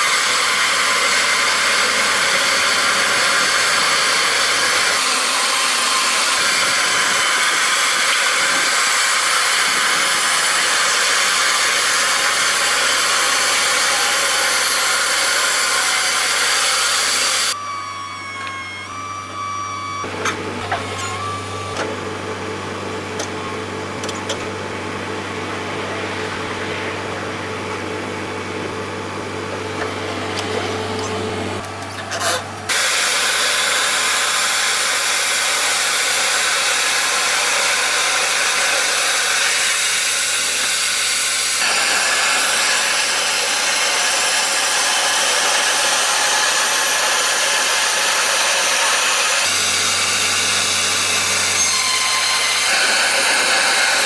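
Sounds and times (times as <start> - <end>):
hissing machine noise: 0.0 - 54.0
wood-processing machine hum: 0.0 - 54.0.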